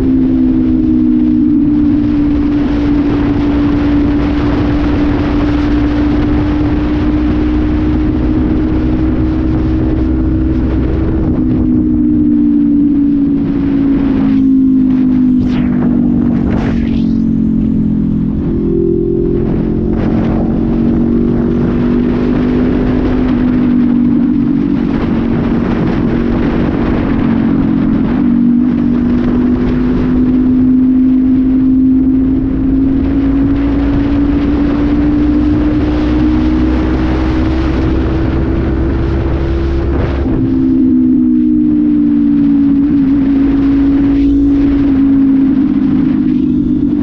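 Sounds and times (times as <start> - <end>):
motorcycle engine running: 0.0 - 47.0
wind noise: 0.0 - 47.0.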